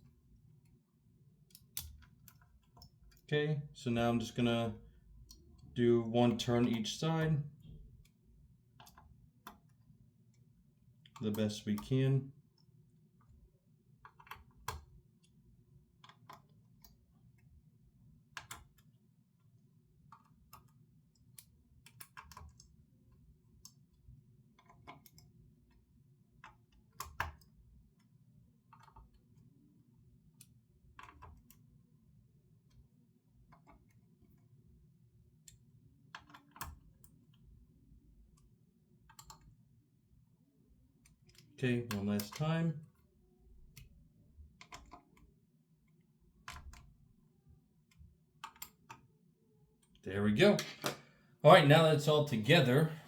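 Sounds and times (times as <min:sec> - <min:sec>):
screwdriver clicks and taps: 0:35.5 - 0:37.2.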